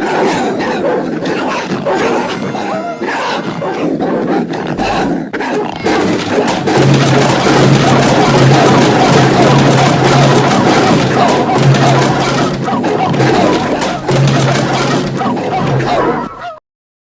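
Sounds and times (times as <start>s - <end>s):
cartoon animal cries: 1.9s - 3.8s, 15.6s - 16.6s.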